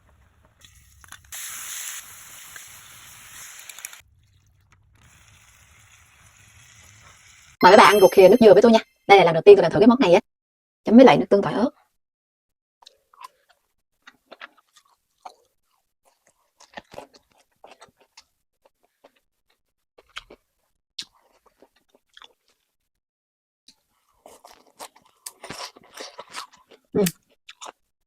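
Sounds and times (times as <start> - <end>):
wet chewing and crunching: 12.8 - 22.8, 23.7 - 27.9.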